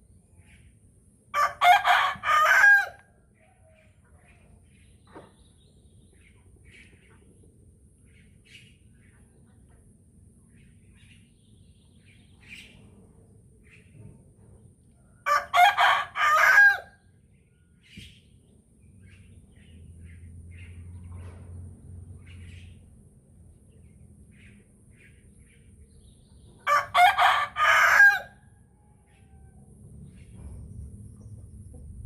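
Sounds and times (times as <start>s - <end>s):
rooster crowing: 1.4s - 3.0s, 15.2s - 17.0s, 26.6s - 29.7s.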